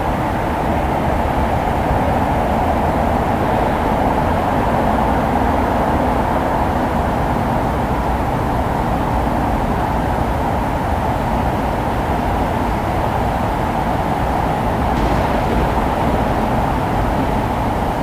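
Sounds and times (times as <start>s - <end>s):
deep low rumble: 15.0s - 18.0s
heavy rainfall: 15.0s - 18.0s.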